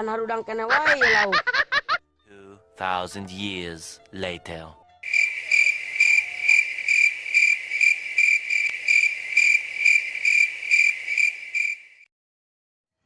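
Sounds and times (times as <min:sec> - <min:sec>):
cricket chirping: 0:05.0 - 0:12.1.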